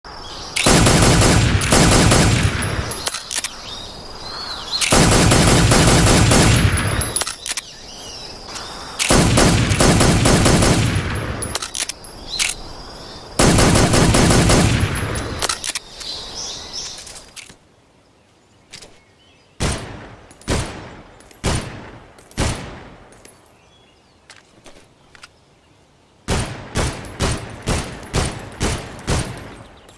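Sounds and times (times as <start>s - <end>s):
pistol rapid fire: 0.6s - 3.0s, 4.9s - 7.1s, 9.0s - 11.4s, 13.4s - 15.4s.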